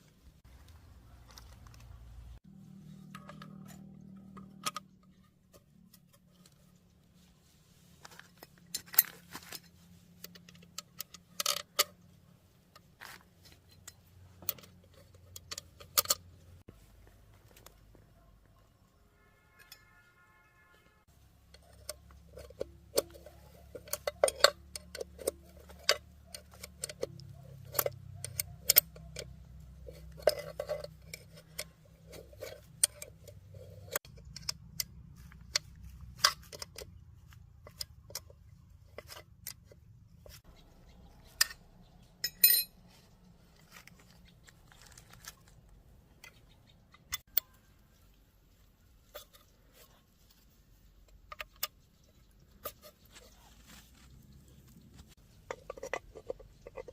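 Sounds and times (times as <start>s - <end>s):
metal tools clinking: 8.0s - 16.5s, 21.4s - 37.0s, 41.2s - 45.4s.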